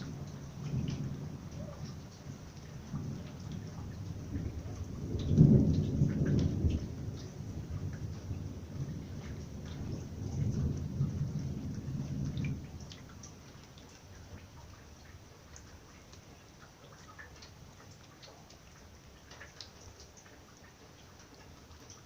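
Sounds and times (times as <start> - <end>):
thunder rumble: 0.0 - 13.6
raindrops ticking and dripping: 0.0 - 22.0.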